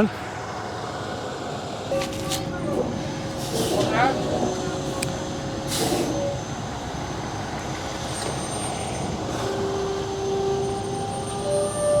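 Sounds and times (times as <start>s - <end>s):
truck diesel engine running: 2.5s - 12.0s.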